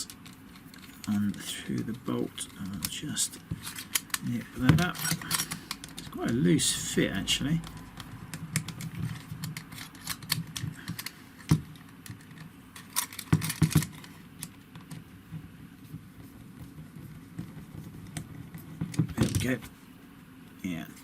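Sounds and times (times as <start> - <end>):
small metal clicks and rattling: 0.0 - 3.0, 3.6 - 6.4, 7.6 - 15.0.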